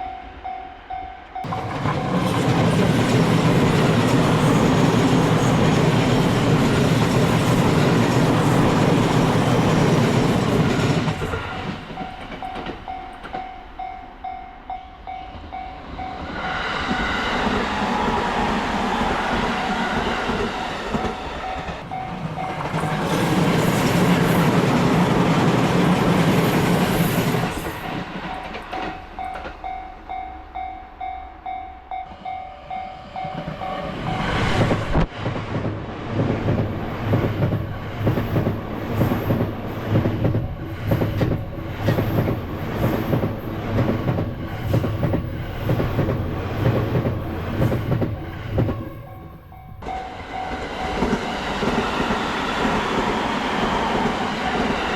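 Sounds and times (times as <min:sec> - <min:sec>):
crossing warning bell ringing: 0:00.0 - 0:16.4, 0:21.0 - 0:23.6, 0:48.1 - 0:51.2
train rumbling by: 0:00.0 - 0:54.9
train wheels clattering over rail joints: 0:01.5 - 0:13.5.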